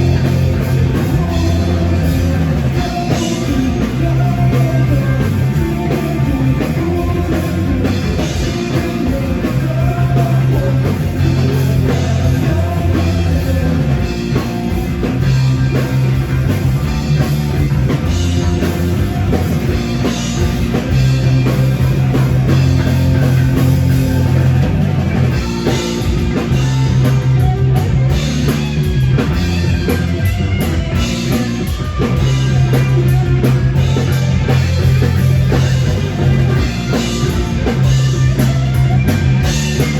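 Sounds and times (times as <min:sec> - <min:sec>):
rock band playing live: 0:00.0 - 0:39.9.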